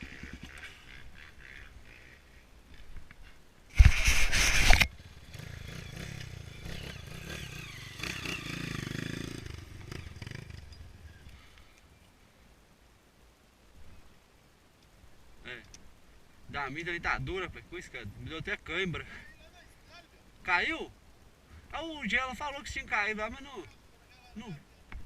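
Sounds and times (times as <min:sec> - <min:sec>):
motorcycle engine at low revs: 0:00.0 - 0:02.2, 0:03.8 - 0:11.1.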